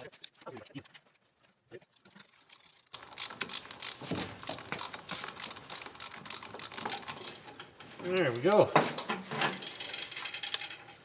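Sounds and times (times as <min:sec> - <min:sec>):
ratchet wrench clicking: 0:02.6 - 0:07.4.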